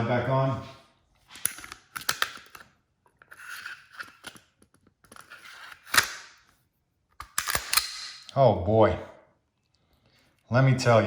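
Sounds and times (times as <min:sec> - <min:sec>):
pistol slide metal clicks: 0:07.2 - 0:08.3.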